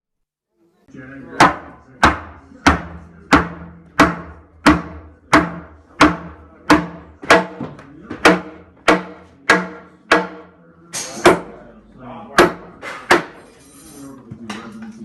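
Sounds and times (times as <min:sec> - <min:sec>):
hammer blows with ringing: 0:01.4 - 0:11.5.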